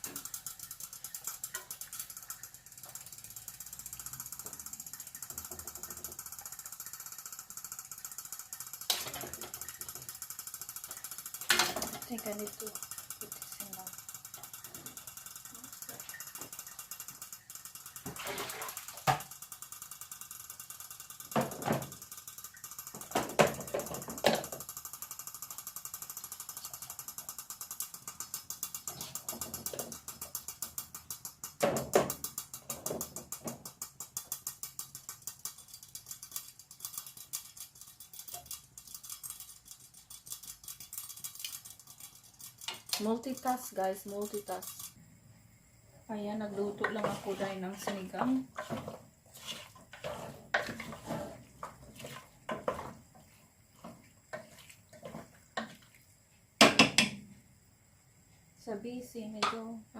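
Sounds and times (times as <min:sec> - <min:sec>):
rapid mechanical ticking: 0:00.0 - 0:18.1, 0:18.8 - 0:45.0
cookware knocking and clattering: 0:08.9 - 0:09.9, 0:11.4 - 0:12.3, 0:21.3 - 0:22.0, 0:23.0 - 0:24.6, 0:31.4 - 0:34.1, 0:46.7 - 0:53.0, 0:56.6 - 0:57.2.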